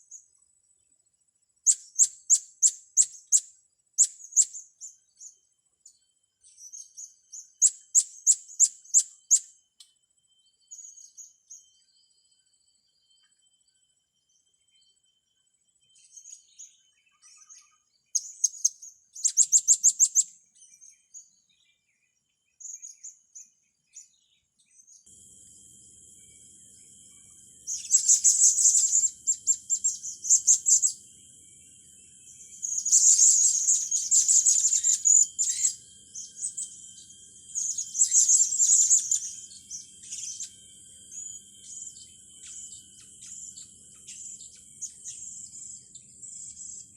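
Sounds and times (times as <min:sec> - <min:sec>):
high-pitched whine: 0:25.1 - 0:45.8
parrots chirping and twittering: 0:26.1 - 0:46.9.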